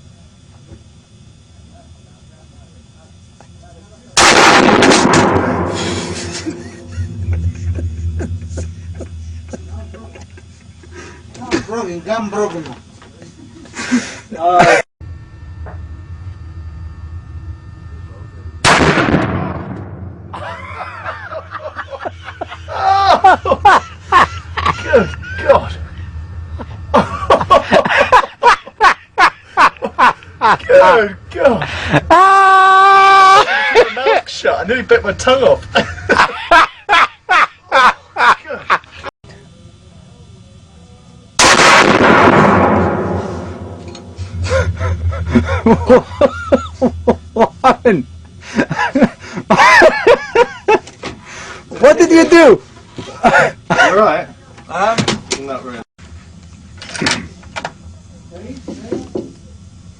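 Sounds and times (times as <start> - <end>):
voices: 0.0 - 4.2, 5.9 - 14.8, 20.4 - 41.4
loud gunshot: 4.2 - 6.4, 18.6 - 20.3, 41.4 - 43.9
people crying out: 20.4 - 25.9, 26.9 - 34.1.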